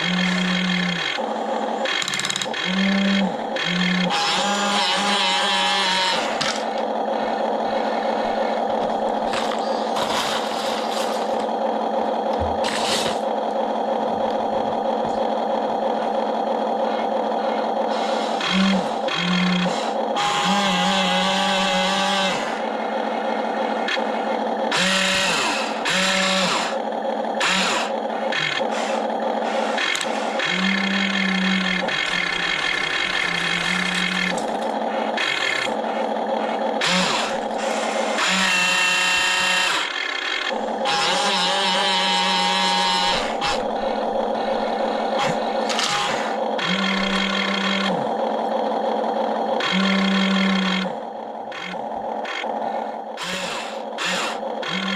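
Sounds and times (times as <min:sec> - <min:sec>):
electric motors whining: 0:00.0 - 0:54.9
low motor tone: 0:00.0 - 0:54.9.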